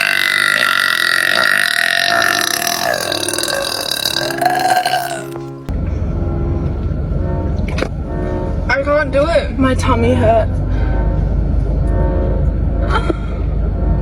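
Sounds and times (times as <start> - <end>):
person burping: 0.0 - 5.5
steady low rumble: 3.9 - 14.0.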